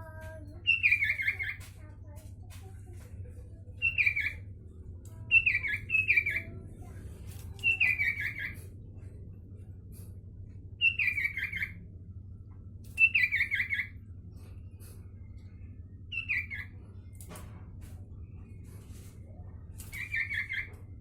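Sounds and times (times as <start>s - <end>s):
faint low hum: 0.0s - 21.0s
bird singing: 0.6s - 1.6s, 3.7s - 4.6s, 5.2s - 6.6s, 7.6s - 8.6s, 10.8s - 11.8s, 12.9s - 14.0s, 16.0s - 16.8s.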